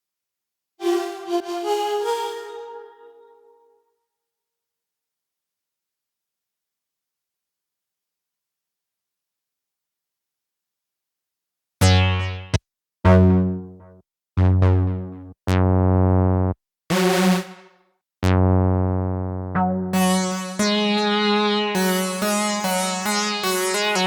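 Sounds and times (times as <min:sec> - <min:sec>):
synthesizer notes and chords: 0:00.8 - 0:03.6, 0:11.8 - 0:17.6, 0:18.2 - 0:24.0.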